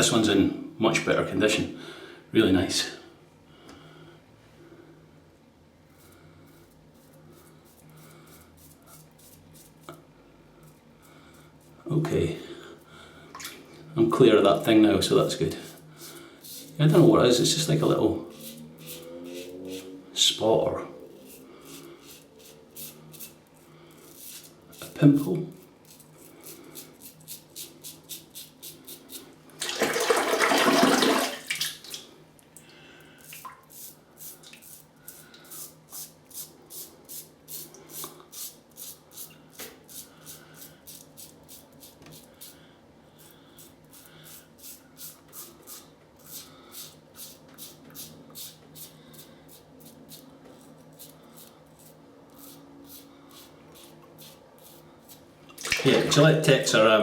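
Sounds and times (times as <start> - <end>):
razor scraping stubble: 15.2 - 19.9, 21.1 - 29.3, 43.2 - 55.3
water tap running: 29.6 - 32.0, 55.6 - 56.4.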